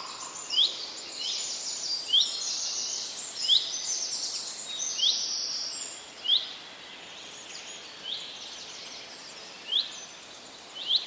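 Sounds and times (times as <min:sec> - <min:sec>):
birds twittering: 0:00.0 - 0:01.4.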